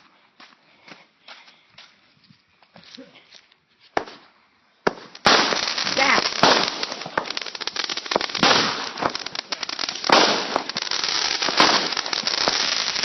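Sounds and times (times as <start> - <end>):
firework bangs: 4.0 - 13.0
fireworks crackling: 4.0 - 13.0.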